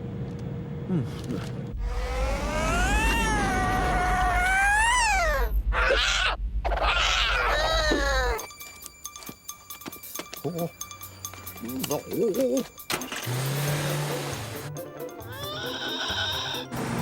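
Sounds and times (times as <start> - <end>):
rough noisy cat sounds: 1.8 - 8.4
cartoon cat meowing: 2.3 - 8.4.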